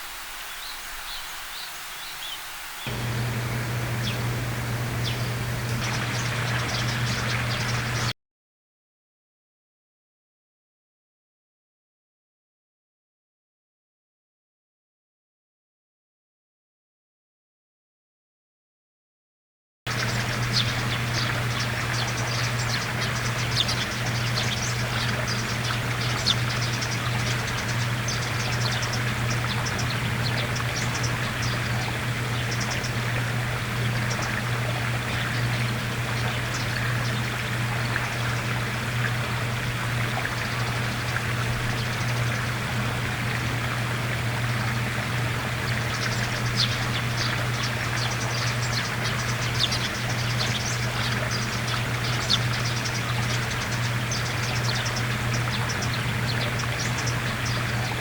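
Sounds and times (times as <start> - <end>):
sparrows chirping: 0.3 - 8.1, 19.9 - 43.2, 44.6 - 58.0
constant low hum: 2.8 - 8.1, 19.9 - 58.0.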